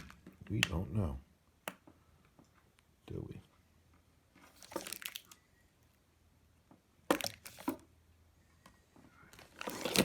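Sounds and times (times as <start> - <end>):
crackling crinkling handling noise: 4.3 - 5.4, 7.0 - 7.9, 9.3 - 10.0.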